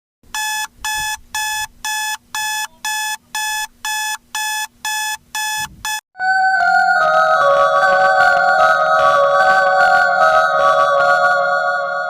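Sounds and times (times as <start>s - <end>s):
electronic alarm beeping: 0.4s - 6.0s, 6.6s - 12.0s
held electronic tone: 0.4s - 12.0s.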